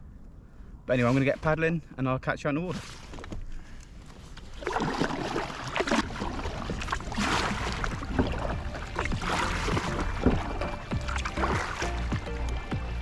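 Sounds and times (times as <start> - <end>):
paddle strokes splashing water: 4.2 - 13.0.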